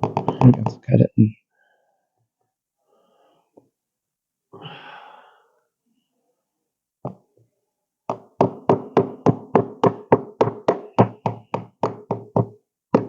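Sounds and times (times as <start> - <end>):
sharp knocks on wood: 0.0 - 0.8, 8.1 - 13.0.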